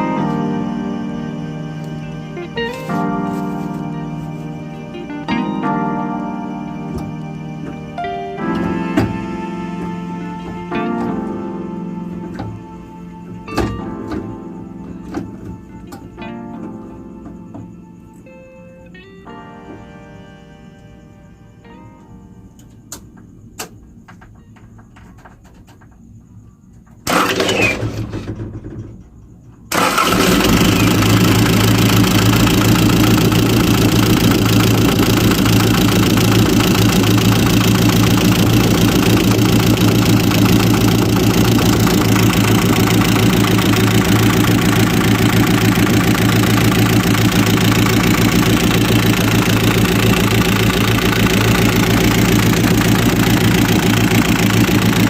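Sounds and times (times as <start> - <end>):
diesel engine starting and idling: 27.0 - 28.7, 29.7 - 55.0
loud burst: 27.1 - 28.3.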